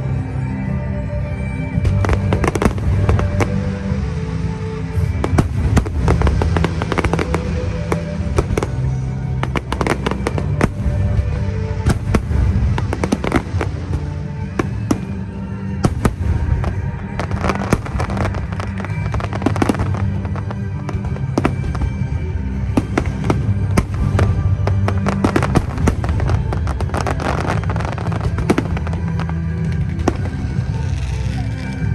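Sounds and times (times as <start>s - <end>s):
loud music playing: 0.0s - 31.9s
fireworks bursting and crackling: 1.7s - 31.9s.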